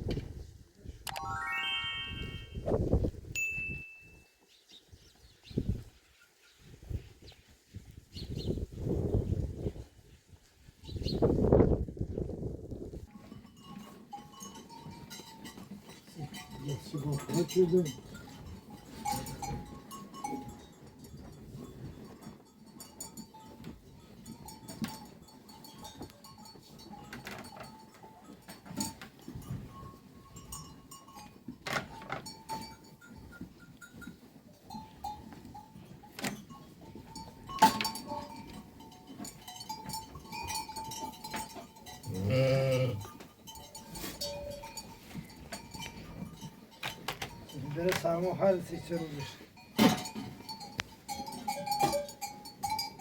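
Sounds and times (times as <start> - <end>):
sheep bells clinking: 1.2 - 2.6, 3.4 - 4.5, 13.1 - 53.0
sheep bleating: 42.1 - 43.0.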